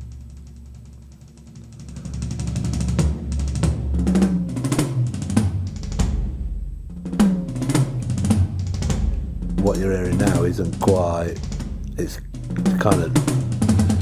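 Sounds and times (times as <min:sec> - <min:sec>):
electronic drum kit playing: 0:01.8 - 0:14.0
tom fills stepping down in pitch: 0:11.9 - 0:14.0.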